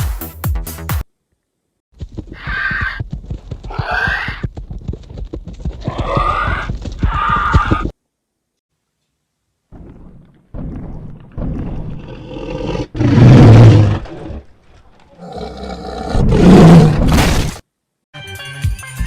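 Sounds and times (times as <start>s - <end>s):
deep animal-like roars: 10.8s - 14.5s, 15.1s - 17.1s.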